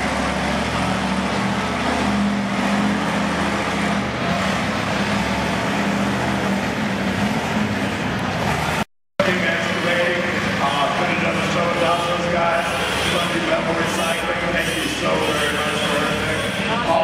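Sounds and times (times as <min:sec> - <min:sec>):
noisy background: 0:00.0 - 0:17.0
vehicle engine humming: 0:00.0 - 0:17.0.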